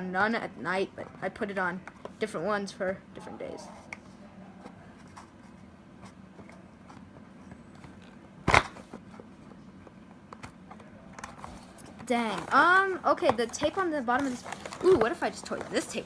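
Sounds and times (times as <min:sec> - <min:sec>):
cardboard scraping and crackling: 0:11.3 - 0:16.0.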